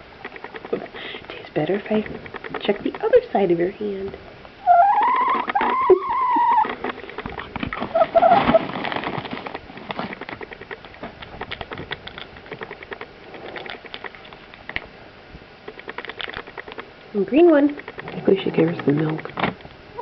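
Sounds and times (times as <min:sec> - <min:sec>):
chicken pecking cereal: 0:00.2 - 0:03.6, 0:04.7 - 0:14.9, 0:15.6 - 0:19.5
chicken call: 0:04.6 - 0:06.8, 0:07.9 - 0:08.6.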